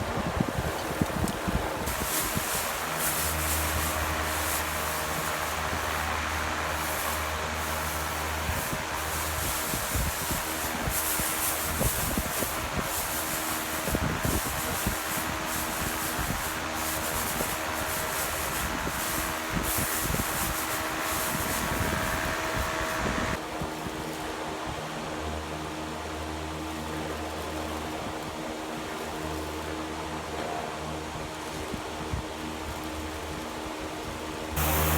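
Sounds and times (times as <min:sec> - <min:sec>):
steady hum: 0:00.0 - 0:23.4, 0:34.6 - 0:34.9
grain rubbing and scraping: 0:01.8 - 0:23.4.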